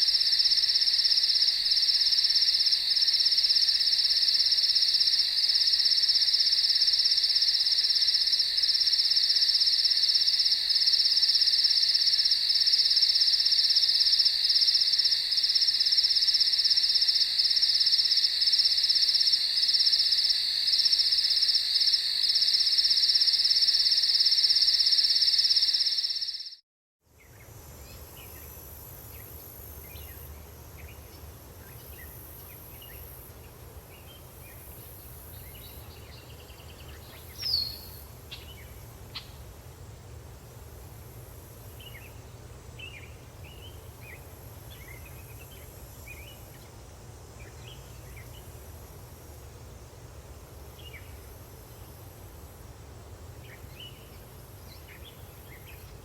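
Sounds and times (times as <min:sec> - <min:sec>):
crickets trilling: 0:00.0 - 0:26.6, 0:31.6 - 0:40.0
faint bird chirps: 0:34.5 - 0:39.4.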